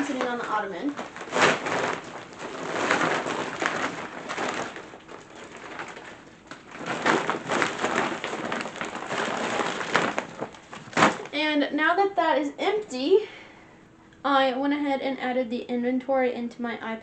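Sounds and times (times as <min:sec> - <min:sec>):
duffel bag rustling and shaking: 0:00.0 - 0:11.5.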